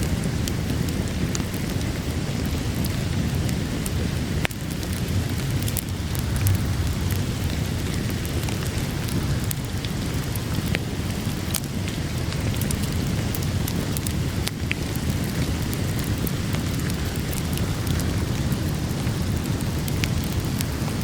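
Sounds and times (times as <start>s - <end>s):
steady rain: 0.0s - 21.0s
wood fire crackling: 3.7s - 11.6s
low rumble: 4.7s - 9.9s.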